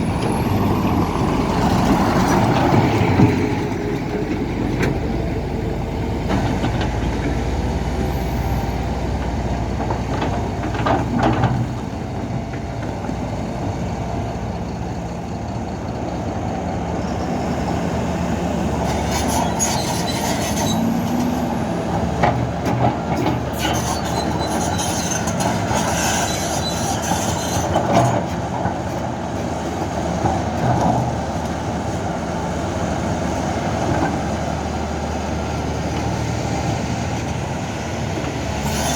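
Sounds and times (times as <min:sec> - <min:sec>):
excavator diesel engine: 0:00.0 - 0:38.9
high-pitched squeals: 0:18.8 - 0:21.8.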